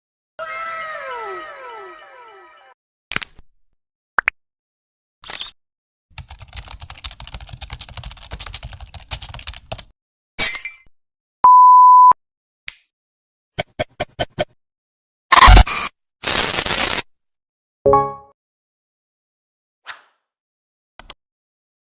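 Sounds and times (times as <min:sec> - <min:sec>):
computer keyboard typing: 0:06.2 - 0:09.9.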